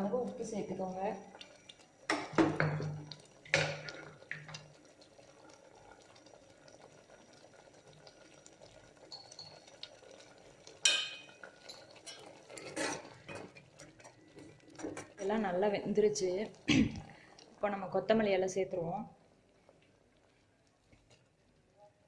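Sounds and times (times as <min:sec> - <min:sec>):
spoon stirring pot: 0:09.0 - 0:10.2, 0:10.8 - 0:15.4.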